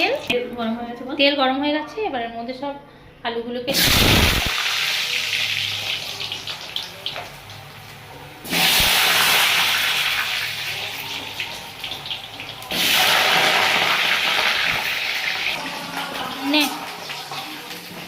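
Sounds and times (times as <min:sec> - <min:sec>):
potatoes sizzling in hot oil: 0:03.7 - 0:18.0.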